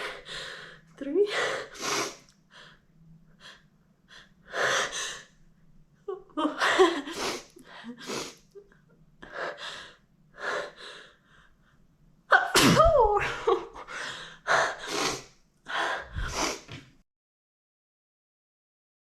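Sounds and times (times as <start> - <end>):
woman sneezing loudly: 12.3 - 13.5
woman gasping inhalations: 13.9 - 16.9.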